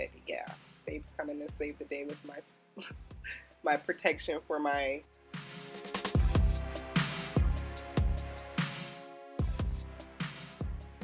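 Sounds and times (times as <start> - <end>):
deep kick drums: 0.9 - 1.8, 2.9 - 3.4, 6.2 - 8.4, 9.4 - 10.0, 10.6 - 11.0.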